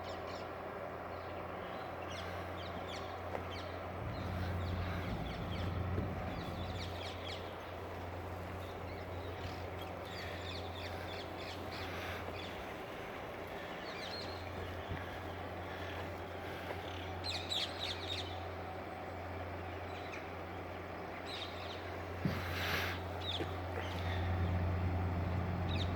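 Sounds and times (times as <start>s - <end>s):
boat engine humming: 0.1s - 25.9s
birds chirping and cawing: 2.1s - 7.7s, 8.6s - 18.4s.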